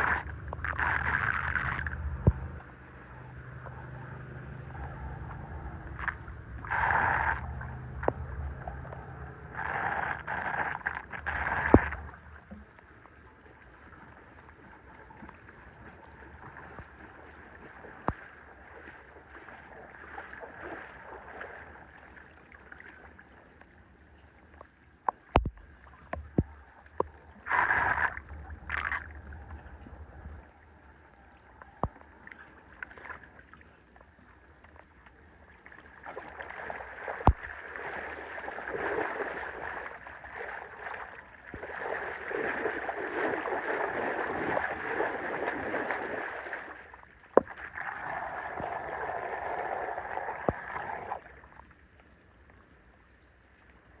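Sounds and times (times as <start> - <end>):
water rushing: 0.0 - 12.6, 36.0 - 51.5.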